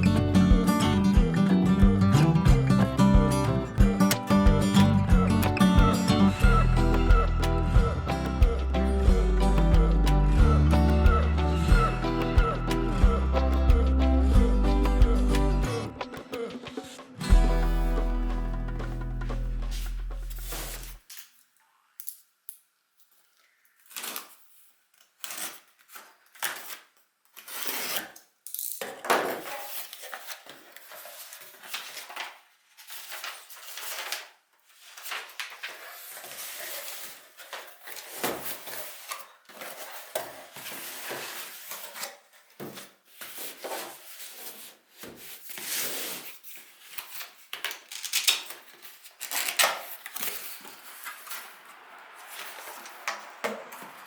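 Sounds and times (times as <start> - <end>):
packaging rustling and scraping: 19.7 - 21.4, 23.1 - 54.0.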